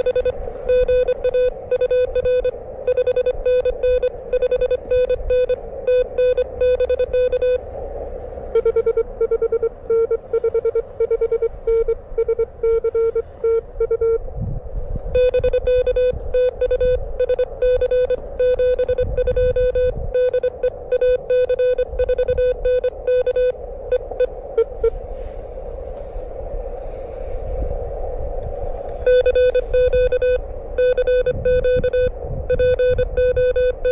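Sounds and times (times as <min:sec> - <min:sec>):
morse code beeps: 0:00.0 - 0:07.6, 0:08.5 - 0:14.2, 0:15.1 - 0:25.0, 0:28.9 - 0:33.9
wind rumbling on microphone: 0:00.0 - 0:33.9
radio receiver hiss: 0:15.1 - 0:26.1, 0:28.4 - 0:33.9.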